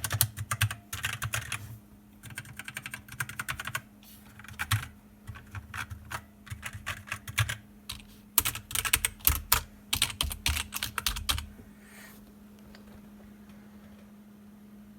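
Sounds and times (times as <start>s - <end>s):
typing on keyboard: 0.0s - 1.6s, 2.2s - 3.8s, 4.4s - 11.5s.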